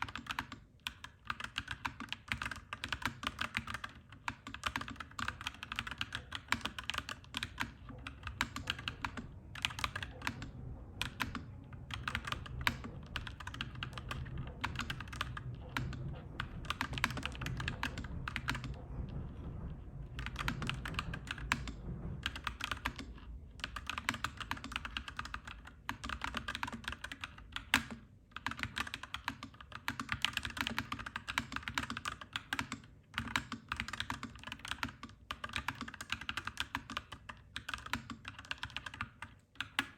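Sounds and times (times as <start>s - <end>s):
typing on mechanical keyboard: 0.0s - 39.9s
low rumble: 7.2s - 25.6s.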